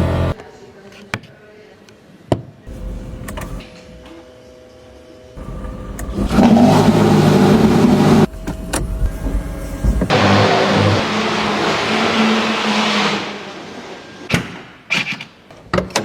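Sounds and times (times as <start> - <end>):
car engine accelerating hard: 0.0 - 0.4, 6.1 - 8.3, 10.1 - 13.6.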